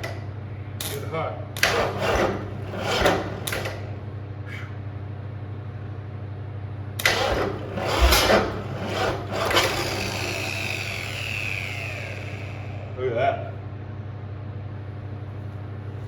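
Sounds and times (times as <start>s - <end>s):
engine cranking on starter: 1.6s - 3.9s, 7.0s - 13.0s
steady hum: 6.6s - 16.0s
engine uneven bursts: 7.0s - 13.2s.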